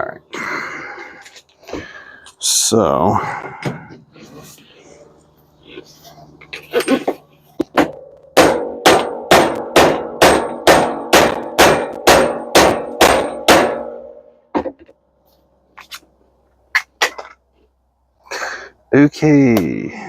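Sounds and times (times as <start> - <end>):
hammer striking metal: 7.7 - 14.3.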